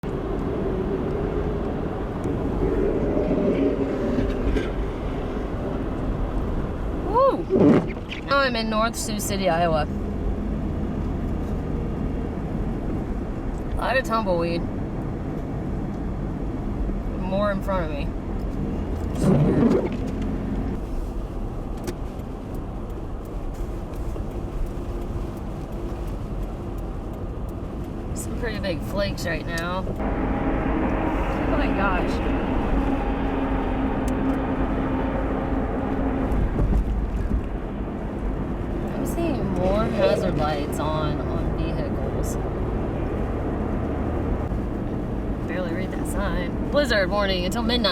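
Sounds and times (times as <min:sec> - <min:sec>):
car interior road and engine rumble: 0:00.0 - 0:47.9
wavering hum: 0:30.0 - 0:42.4.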